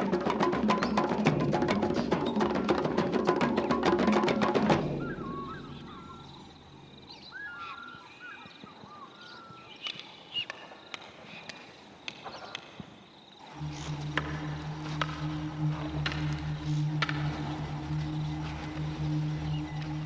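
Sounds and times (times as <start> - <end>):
percussion music: 0.0 - 7.0, 13.4 - 20.0
natural ambience: 0.0 - 20.0
birds chirping and calling: 0.4 - 11.6.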